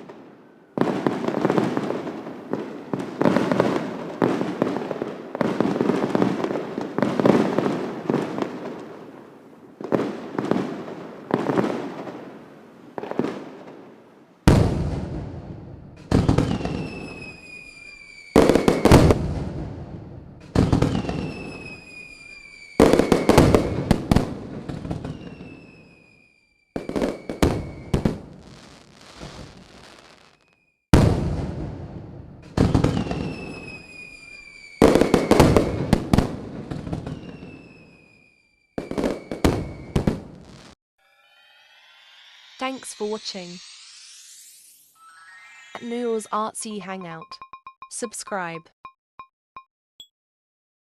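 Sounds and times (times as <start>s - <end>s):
fireworks bangs with crackling: 0.0s - 40.8s
fireworks whistle falling in pitch: 16.0s - 19.3s, 20.5s - 24.2s, 24.8s - 30.8s, 32.7s - 36.1s, 36.9s - 46.3s.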